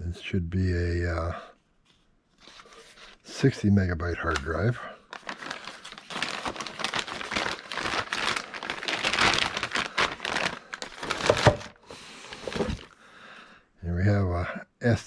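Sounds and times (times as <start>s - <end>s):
plastic bag crinkling: 4.2s - 13.0s.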